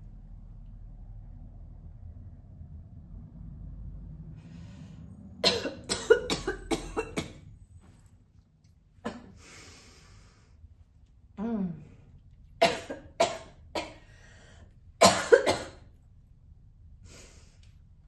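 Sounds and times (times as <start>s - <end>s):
long breathy breath: 4.4s - 5.3s, 9.4s - 10.6s, 14.0s - 14.7s, 17.0s - 17.7s
woman coughing: 5.4s - 7.3s, 12.6s - 14.0s, 15.0s - 15.8s.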